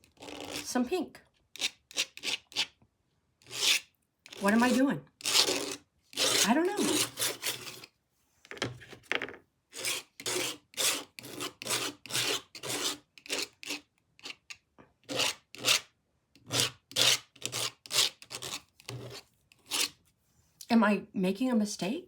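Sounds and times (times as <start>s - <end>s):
paintbrush scrubbing paint: 3.4s - 7.9s.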